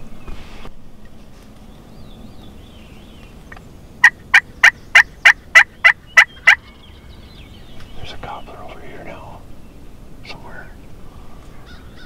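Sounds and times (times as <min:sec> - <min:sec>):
wild turkey yelping: 0:04.0 - 0:07.0.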